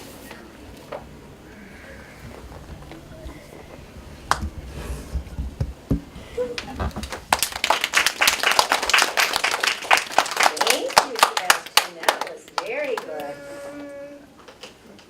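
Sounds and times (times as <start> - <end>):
soft knocks and bumps: 2.6 - 7.2
small group clapping: 6.6 - 13.9.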